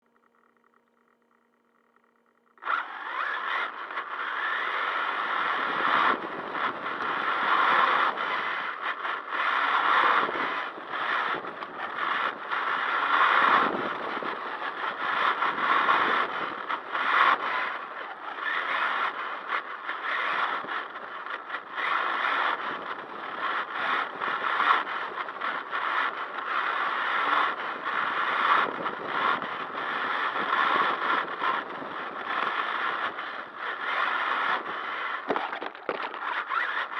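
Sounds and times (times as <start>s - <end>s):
rc car scraping over ground: 2.6s - 36.9s
rattles: 35.3s - 36.6s.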